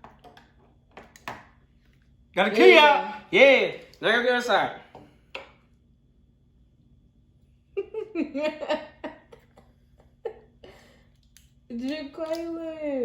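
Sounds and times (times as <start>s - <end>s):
person laughing: 7.8s - 11.0s.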